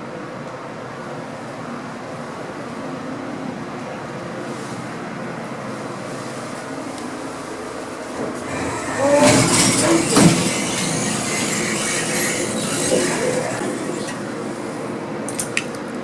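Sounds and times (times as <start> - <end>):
elevator humming and rushing: 7.8 - 15.4
elevator squeal: 8.1 - 14.9
elevator clunk: 8.2 - 14.6.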